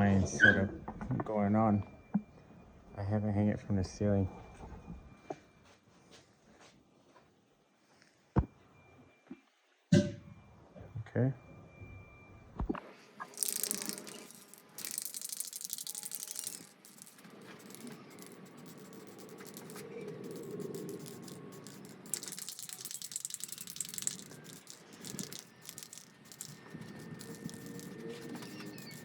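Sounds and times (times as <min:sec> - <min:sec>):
spray can ball rattling: 0:13.2 - 0:29.0.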